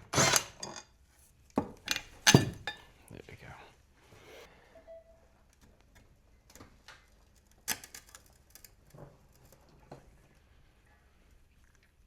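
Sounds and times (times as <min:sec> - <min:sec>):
metal tools clicking and knocking: 0:01.9 - 0:02.8.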